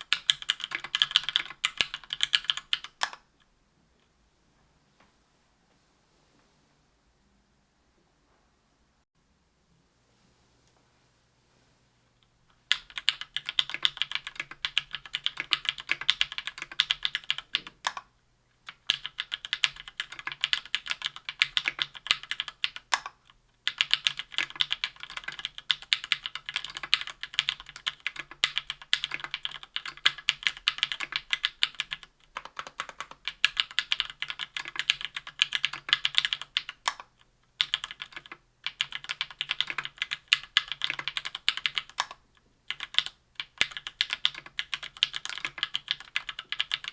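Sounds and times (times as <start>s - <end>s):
fast typing on a keyboard: 0.0s - 3.2s, 12.6s - 18.1s, 18.7s - 46.9s.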